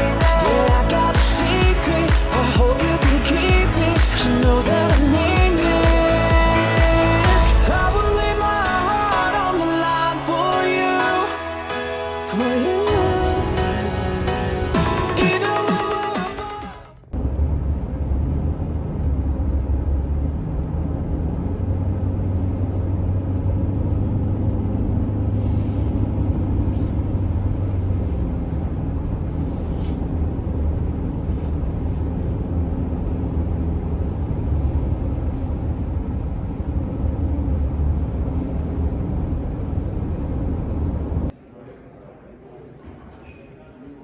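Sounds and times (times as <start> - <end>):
vehicle engine and road noise: 17.0 - 41.4.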